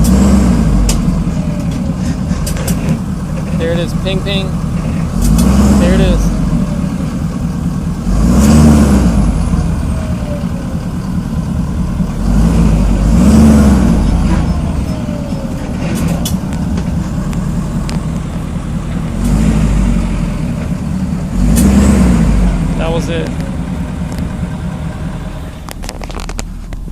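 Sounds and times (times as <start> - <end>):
diesel engine revving: 0.0 - 26.9.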